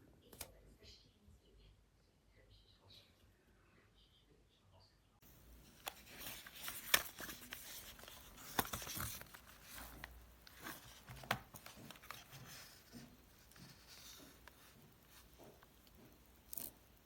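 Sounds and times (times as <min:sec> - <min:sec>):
rustling and crinkling: 0:05.2 - 0:17.0.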